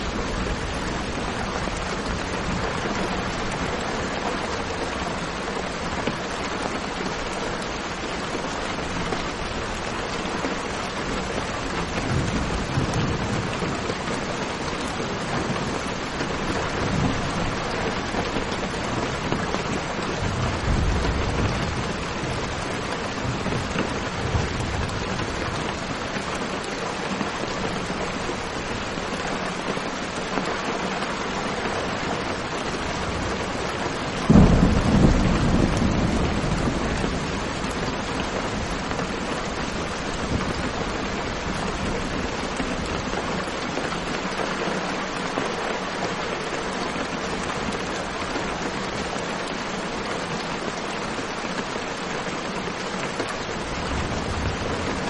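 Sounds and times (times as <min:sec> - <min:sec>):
steady rain falling: 0:00.0 - 0:55.0
low rumbles of thunder: 0:33.0 - 0:41.7.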